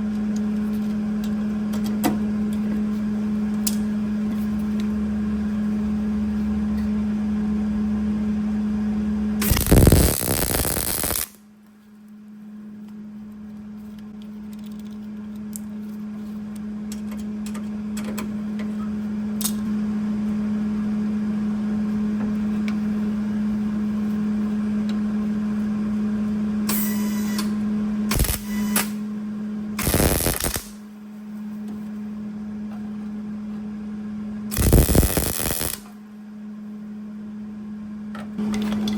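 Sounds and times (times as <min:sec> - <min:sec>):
steady electrical hum: 0:00.0 - 0:38.9
welding arc crackling: 0:09.4 - 0:11.4, 0:28.1 - 0:29.0, 0:29.8 - 0:30.8, 0:34.5 - 0:35.9.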